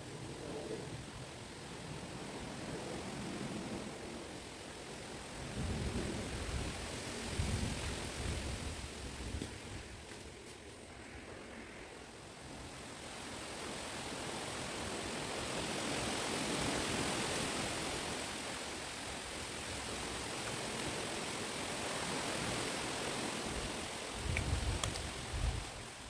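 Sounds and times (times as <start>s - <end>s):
wind buffeting microphone: 0.0s - 11.7s, 22.1s - 26.0s
wind rushing through leaves: 0.0s - 26.0s.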